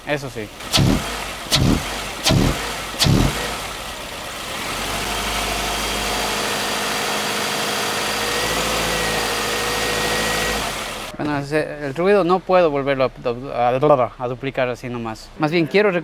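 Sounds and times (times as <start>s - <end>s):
car engine running: 0.0s - 11.2s
sharp knocks: 0.6s - 3.7s.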